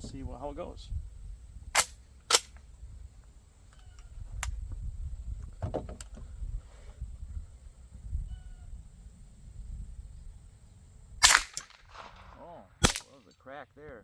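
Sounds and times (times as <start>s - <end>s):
suppressed gunshots: 11.2s - 13.2s.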